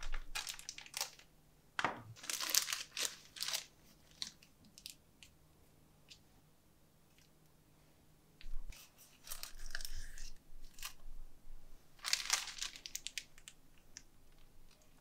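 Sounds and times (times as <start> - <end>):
crunchy rustling: 12.0 - 13.5.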